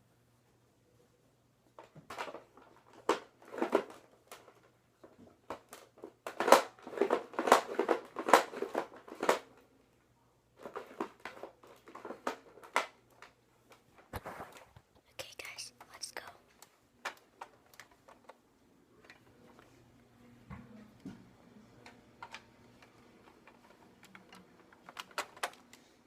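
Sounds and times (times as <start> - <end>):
handling noise rustling and scraping: 10.6 - 14.9.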